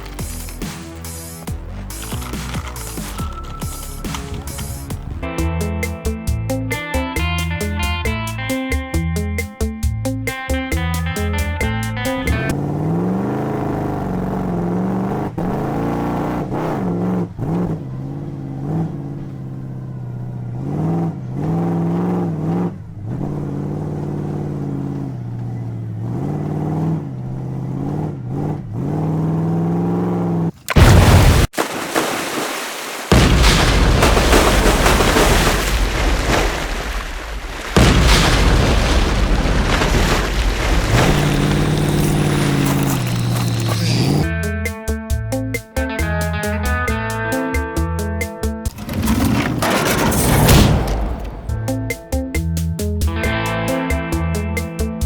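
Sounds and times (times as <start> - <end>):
truck engine revving: 0.0 - 31.5, 37.7 - 54.8
loud boom: 30.8 - 31.5, 33.1 - 42.2, 50.3 - 51.8.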